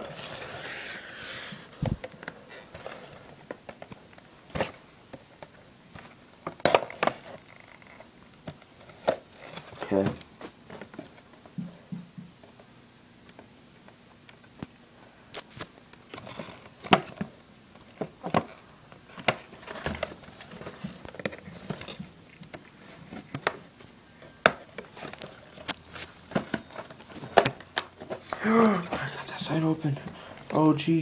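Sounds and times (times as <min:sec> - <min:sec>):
packaging scraping rustles: 0:17.9 - 0:22.0, 0:24.2 - 0:30.6.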